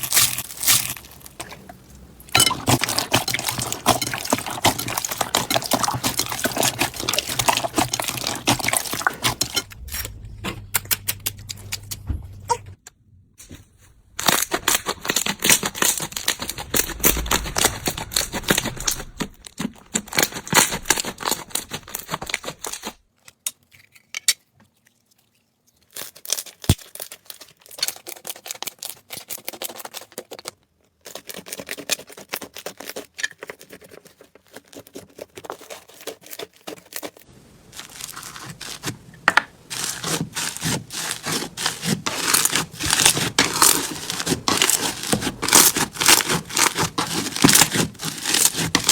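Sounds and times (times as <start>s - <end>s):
slime crackling and popping: 0.0s - 1.6s, 14.2s - 22.9s, 37.6s - 48.9s.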